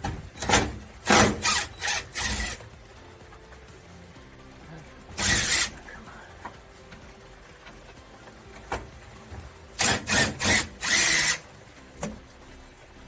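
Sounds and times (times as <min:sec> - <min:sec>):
power drill running: 0:00.0 - 0:02.8, 0:05.1 - 0:05.9, 0:09.7 - 0:12.2.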